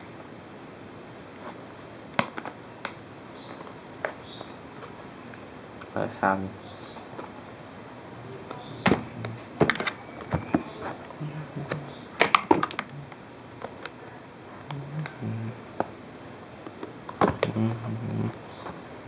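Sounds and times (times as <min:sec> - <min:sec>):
box and packaging clicks and taps: 0:11.7 - 0:12.9.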